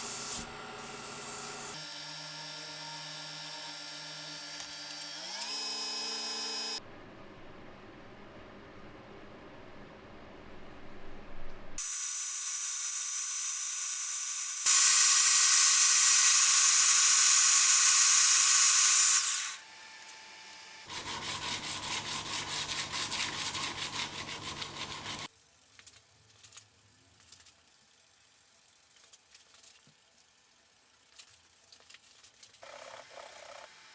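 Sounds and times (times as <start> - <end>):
power tool grinding steel: 11.8 - 25.3
fast rasping: 20.9 - 25.3.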